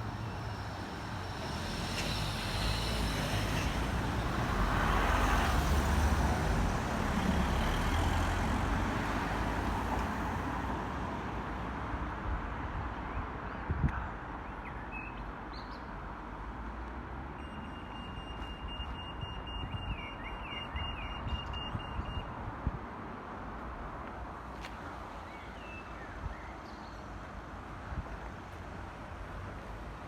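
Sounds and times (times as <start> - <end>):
traffic noise: 0.0 - 30.0
wind: 0.0 - 30.0
crossing signal beeping: 17.4 - 22.4.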